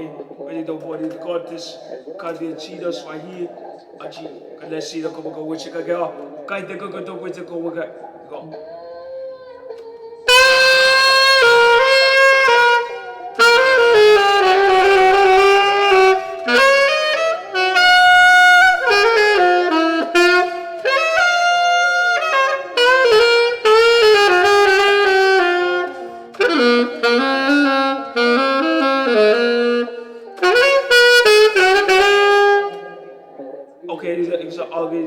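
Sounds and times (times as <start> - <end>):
saxophone playing: 9.7 - 33.6.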